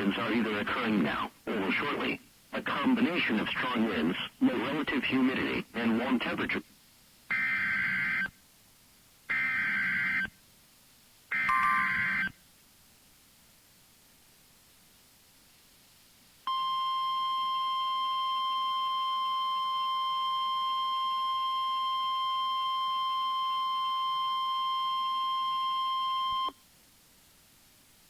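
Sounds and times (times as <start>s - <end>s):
weather radio alarm tone: 11.3s - 12.3s.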